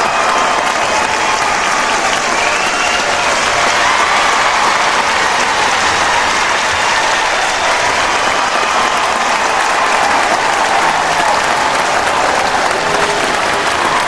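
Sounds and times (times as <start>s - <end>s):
crowd applauding: 0.0s - 14.0s
crowd cheering: 0.0s - 14.0s.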